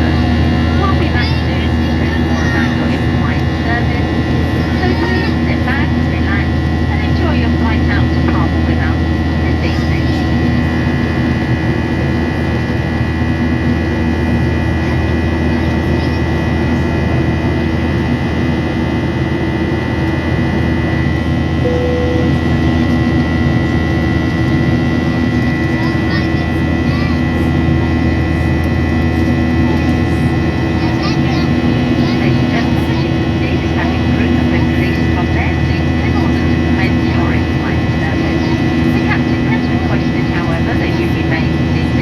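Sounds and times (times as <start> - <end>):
jet engines droning: 0.0 - 42.0
steady tones: 21.5 - 42.0
cabin air hum: 21.6 - 42.0.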